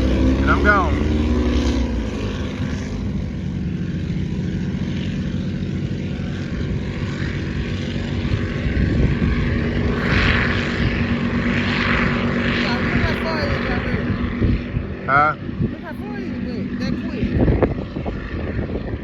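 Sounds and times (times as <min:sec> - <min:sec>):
motorboat engine running: 0:00.0 - 0:19.0.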